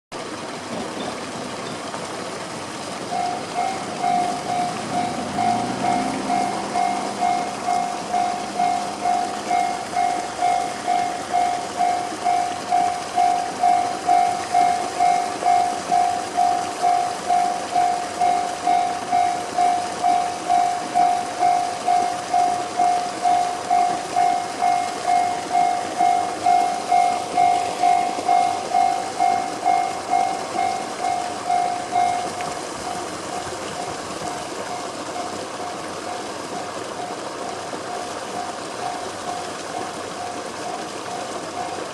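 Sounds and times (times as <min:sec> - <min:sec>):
level crossing alarm: 0:03.1 - 0:33.0.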